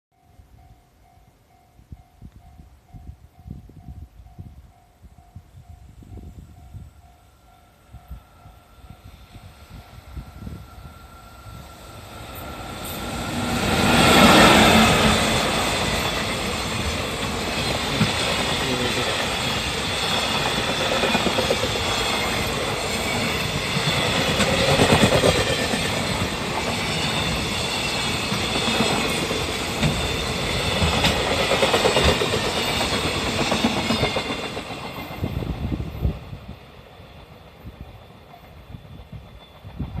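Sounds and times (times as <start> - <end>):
electric locomotive passing: 0.3 - 40.0
wheels clacking over rail joints: 12.2 - 35.3.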